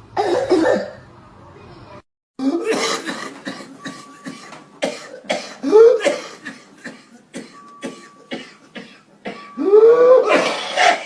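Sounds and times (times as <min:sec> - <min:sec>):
person coughing: 0:00.2 - 0:01.0, 0:02.4 - 0:09.5, 0:10.2 - 0:11.0.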